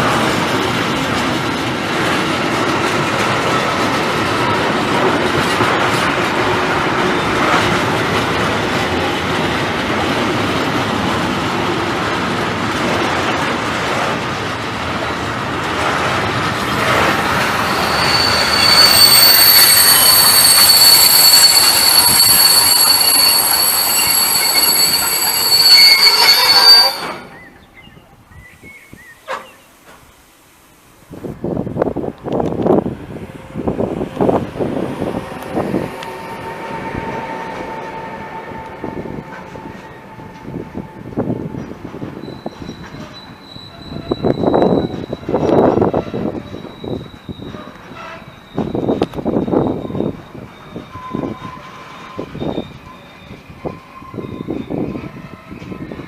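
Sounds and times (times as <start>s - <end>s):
train rumbling and clattering: 0.0s - 56.0s
high wheel squeal: 16.7s - 27.6s, 34.2s - 56.0s.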